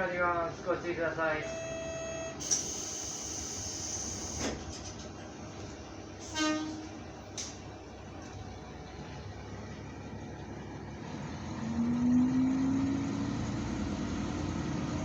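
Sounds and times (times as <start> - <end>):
diesel railcar running: 0.0 - 15.0
train door air hiss: 2.4 - 5.0
train horn toot: 6.2 - 7.0.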